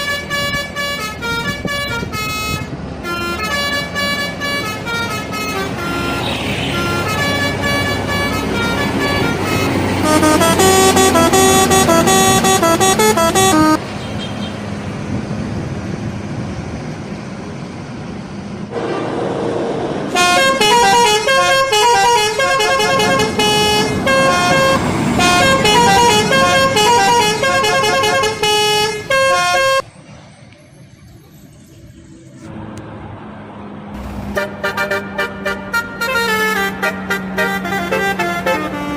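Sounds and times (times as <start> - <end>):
bus musical horn tune: 0.0 - 14.5, 20.1 - 29.8, 34.3 - 38.9
engine and road noise: 0.0 - 38.9.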